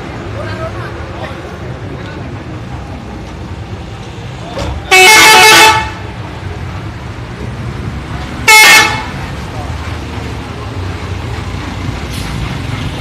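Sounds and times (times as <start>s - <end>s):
multi-tone musical bus horn: 4.9s - 6.1s, 8.4s - 9.2s.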